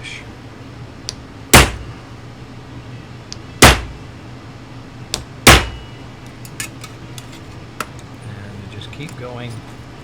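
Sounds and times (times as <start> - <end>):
hammer striking metal: 1.5 - 1.9, 3.6 - 4.0, 5.2 - 5.9.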